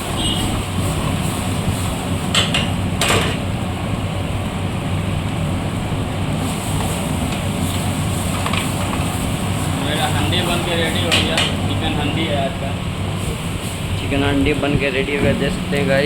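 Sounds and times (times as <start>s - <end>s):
burner and fan hum: 0.0s - 16.0s
utensil clattering against pot: 11.0s - 11.7s.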